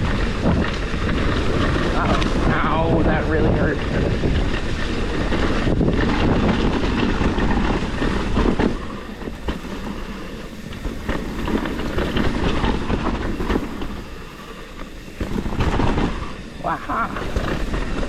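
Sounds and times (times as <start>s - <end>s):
bike rattling over rough trail: 0.0s - 18.0s
wind buffeting microphone: 0.0s - 18.0s.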